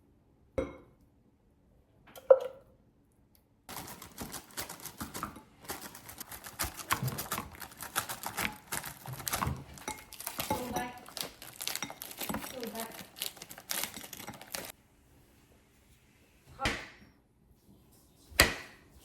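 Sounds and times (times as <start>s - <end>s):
utensils and dishes clattering: 3.7s - 14.7s.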